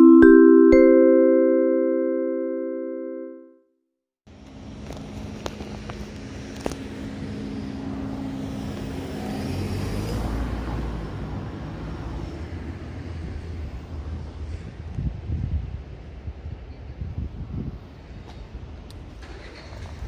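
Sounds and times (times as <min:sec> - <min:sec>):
vehicle passing rumble: 0:04.3 - 0:15.2.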